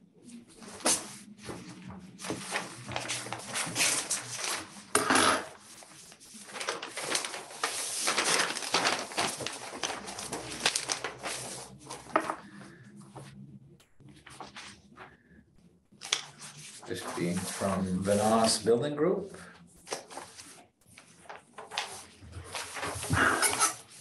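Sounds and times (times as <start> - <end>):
paper rustling and tearing: 0.4 - 12.5, 15.9 - 18.6, 19.8 - 24.0.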